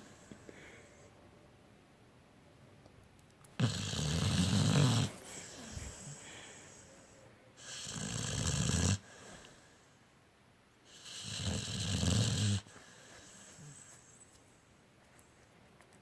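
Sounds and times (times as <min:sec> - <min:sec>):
dog snoring: 0:03.6 - 0:06.7, 0:07.6 - 0:09.2, 0:10.9 - 0:14.0.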